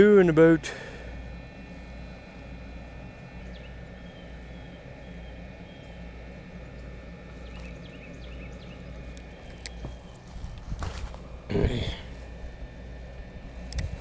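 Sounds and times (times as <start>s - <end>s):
low rumbling outdoor noise: 0.0s - 14.0s
faint bird chirps: 3.3s - 10.4s.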